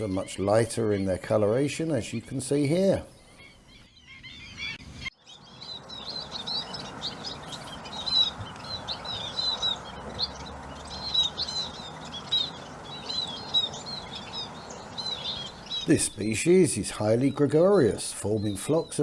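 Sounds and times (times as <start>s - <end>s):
birds chirping: 0.0s - 19.0s
background hiss: 5.3s - 19.0s.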